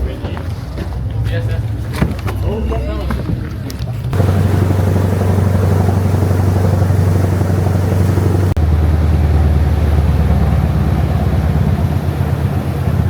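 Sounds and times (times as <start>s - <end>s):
boat engine droning: 4.2s - 13.0s.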